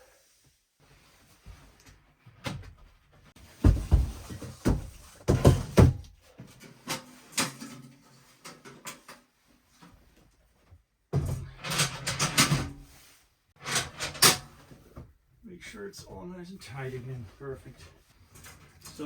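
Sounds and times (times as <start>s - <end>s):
objects knocking and thumping: 2.3s - 9.3s, 11.1s - 12.8s.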